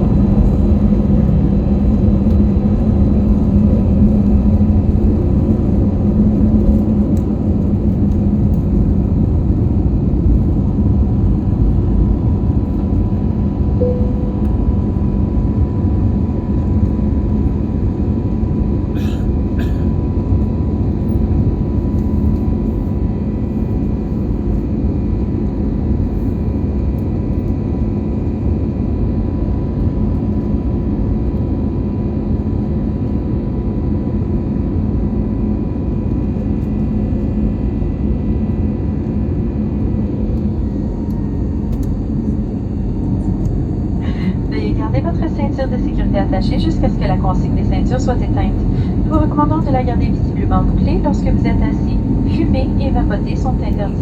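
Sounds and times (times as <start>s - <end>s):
faint steady hum: 0.0s - 18.3s, 39.0s - 54.0s
jet engine rumble: 0.0s - 54.0s.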